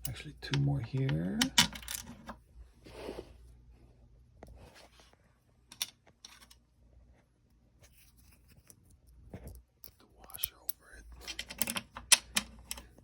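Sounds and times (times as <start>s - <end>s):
small screws clicking and scraping: 8.0s - 13.0s.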